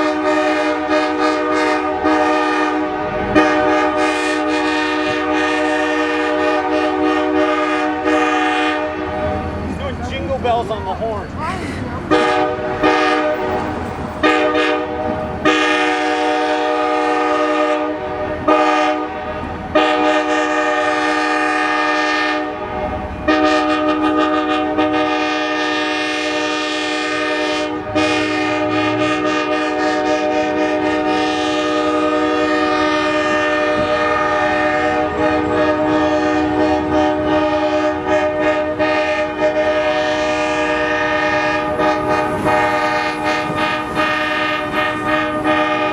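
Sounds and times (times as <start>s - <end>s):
locomotive air horn blasts: 0.0s - 10.8s, 12.0s - 45.9s.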